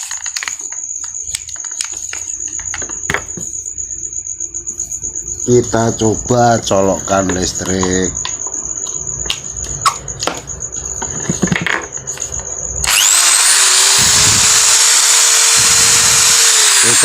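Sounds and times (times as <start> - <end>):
handling clicks and knocks: 7.2 - 12.5
electric drill motor whining: 12.8 - 17.0.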